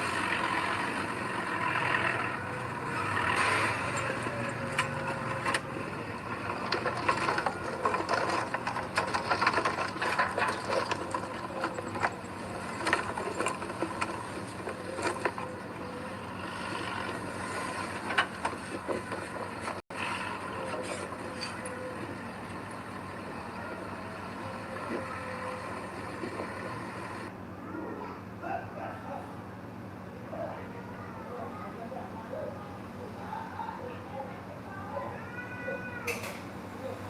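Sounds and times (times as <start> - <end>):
heavy machinery engine running: 0.0 - 27.4.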